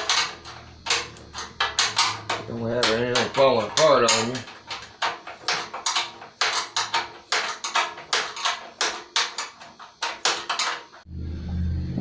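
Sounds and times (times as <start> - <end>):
wrench clicking on steel bolts: 0.0 - 10.9
steady low hum: 10.9 - 12.0.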